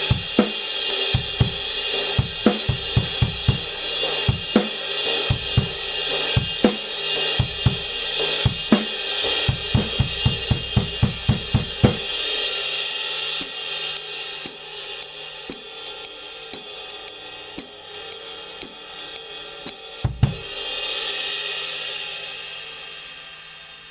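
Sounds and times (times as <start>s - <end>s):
drum kit groove: 0.0s - 23.0s
ride cymbal played with stick: 0.0s - 23.9s.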